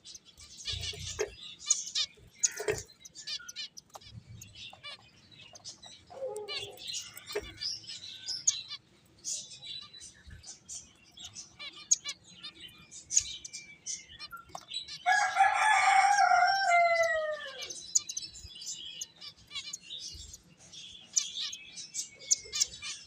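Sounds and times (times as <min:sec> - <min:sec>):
finches chirping: 0:00.0 - 0:23.0
rooster crowing: 0:15.1 - 0:17.8.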